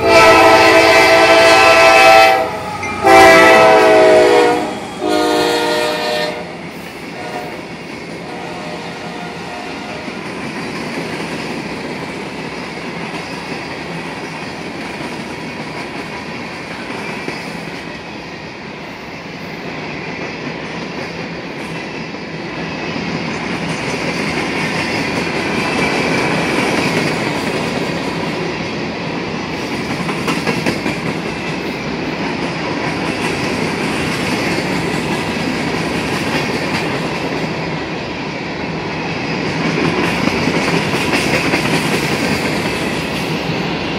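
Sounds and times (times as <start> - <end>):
freight train rolling past: 0.0 - 43.9.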